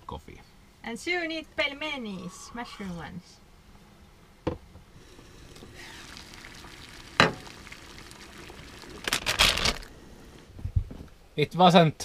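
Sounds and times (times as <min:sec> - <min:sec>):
faint steady hiss: 0:00.0 - 0:12.0
sizzling: 0:04.9 - 0:10.6.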